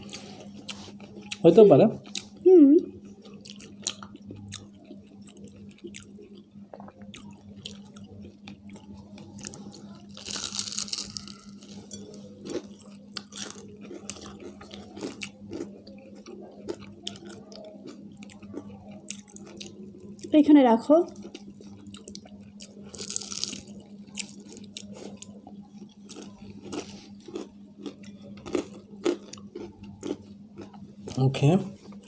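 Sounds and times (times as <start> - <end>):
fried chicken crunching: 7.1 - 20.3, 21.2 - 32.0.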